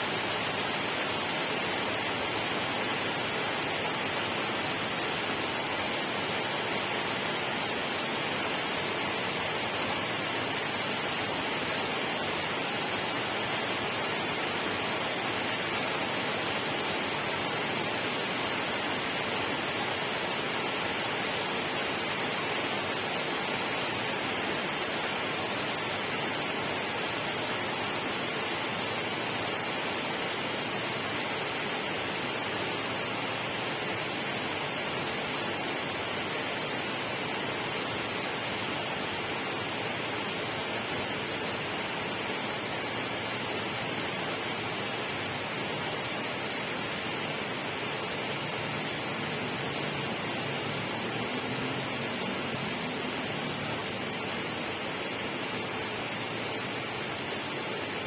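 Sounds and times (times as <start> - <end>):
water rushing: 0.0 - 58.0.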